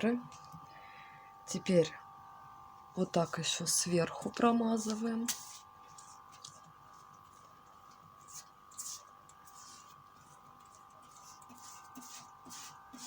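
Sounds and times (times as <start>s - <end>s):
faint steady hum: 0.0s - 13.0s
paintbrush swishing on paper: 4.8s - 6.2s, 8.2s - 13.0s.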